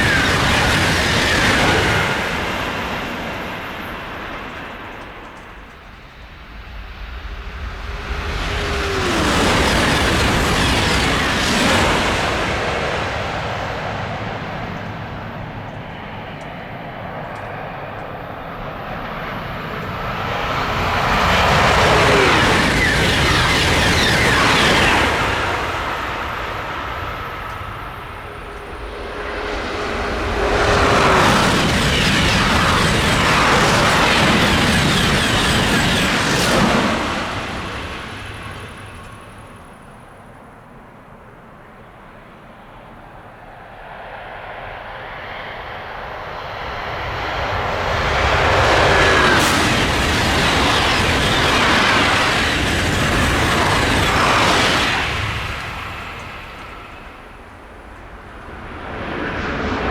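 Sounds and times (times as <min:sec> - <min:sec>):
high-speed train rushing past: 0:00.0 - 0:59.9.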